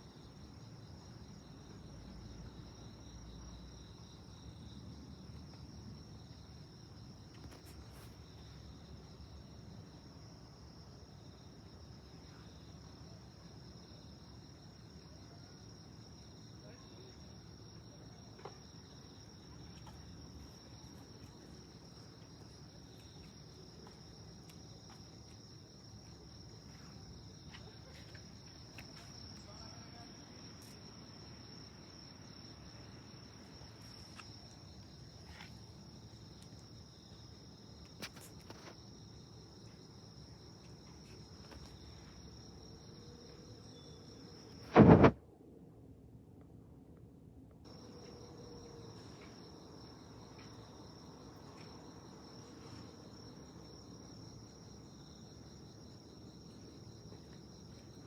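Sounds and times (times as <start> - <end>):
insects trilling: 0.0 - 45.0, 47.7 - 58.0
sudden loud burst: 44.7 - 45.2.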